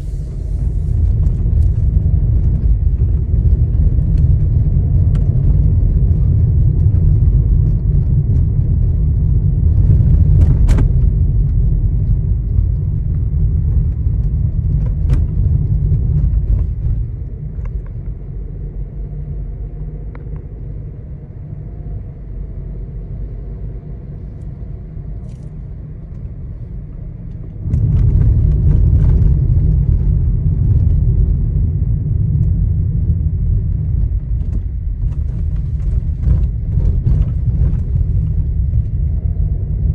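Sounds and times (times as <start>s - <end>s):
road rumble inside car: 0.0s - 39.9s
interior trim clicks and rattles: 1.1s - 18.2s, 33.8s - 39.9s.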